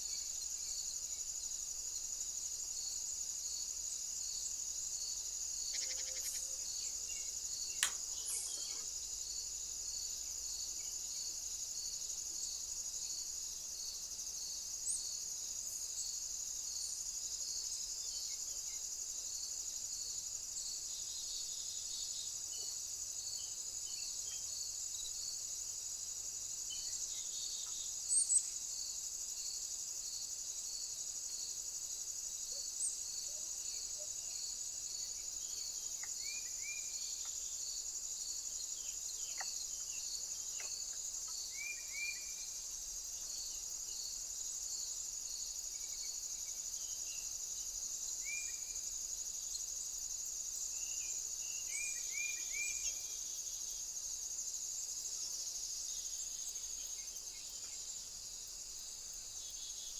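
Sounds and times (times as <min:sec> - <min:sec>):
crickets chirping: 0:00.0 - 0:59.9
faint clicks: 0:07.8 - 0:08.8.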